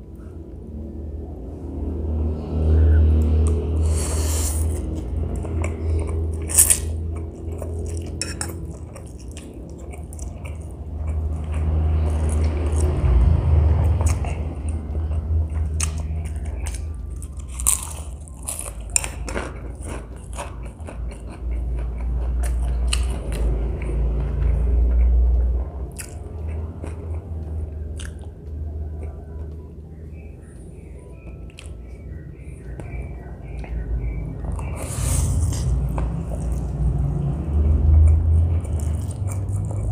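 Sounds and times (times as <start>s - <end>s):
steady low hum: 0.0s - 39.9s
chewing and biting noodles: 3.4s - 25.2s, 34.4s - 39.9s.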